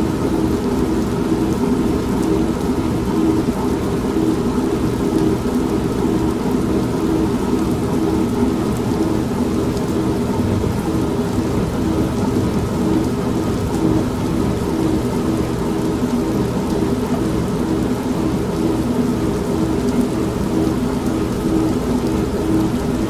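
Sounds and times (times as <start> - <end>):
rain: 0.0 - 23.0
washing machine pulsing hum: 0.0 - 23.0
low rumble of thunder: 8.1 - 16.6.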